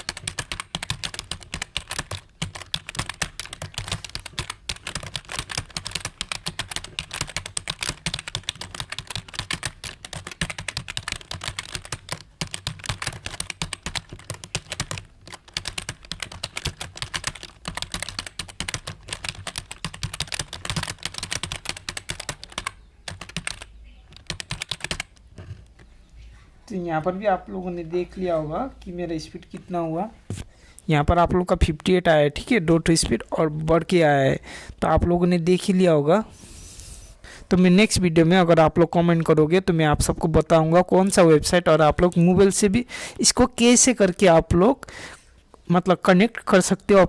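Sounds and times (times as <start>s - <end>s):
fast typing on keyboard: 0.0s - 25.8s.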